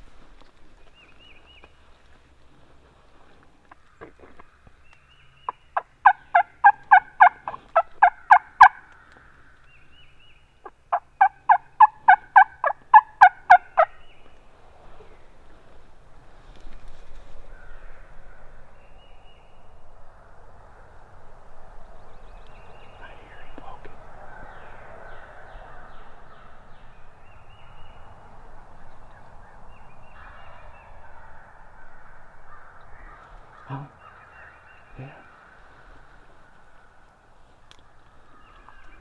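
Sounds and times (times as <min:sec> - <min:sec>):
turkey yelping: 0:05.8 - 0:08.8, 0:10.6 - 0:13.9.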